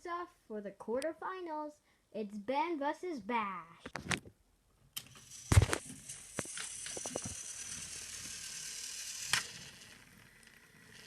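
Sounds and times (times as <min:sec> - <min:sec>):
toy engine whirring hiss: 0:05.1 - 0:11.0.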